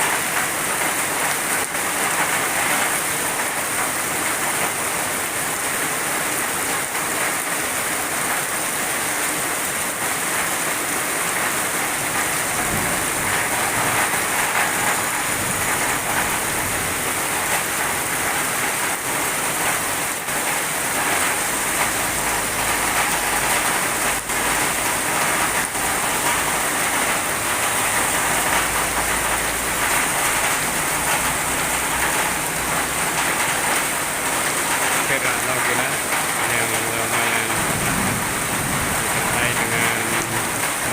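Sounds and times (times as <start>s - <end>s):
heavy rain pouring: 0.0s - 40.9s
thunder rumbling: 12.5s - 18.0s, 37.5s - 40.9s.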